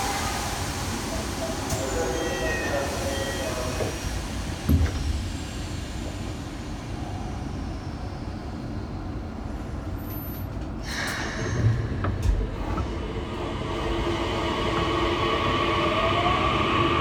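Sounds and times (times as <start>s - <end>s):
train car rumble: 0.0s - 17.0s.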